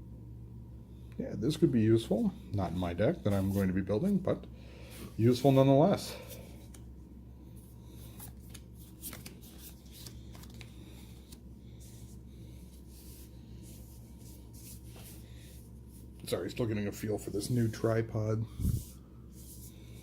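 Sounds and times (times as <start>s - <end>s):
low steady hum: 0.0s - 20.0s
cards flicking and rustling: 8.0s - 11.4s.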